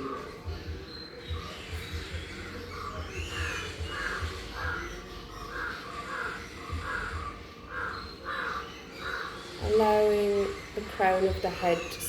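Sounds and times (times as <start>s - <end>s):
crow cawing: 1.4s - 10.8s.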